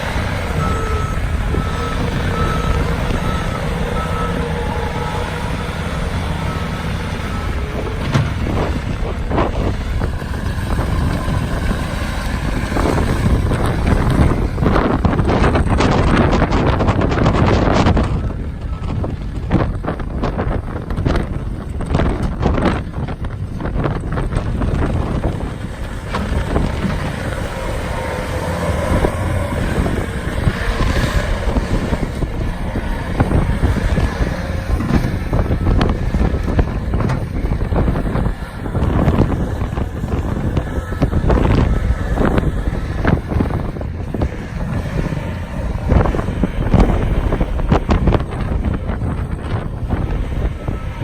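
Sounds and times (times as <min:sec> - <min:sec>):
engine low rumble: 0:00.0 - 0:51.0
wind on microphone: 0:00.0 - 0:51.0.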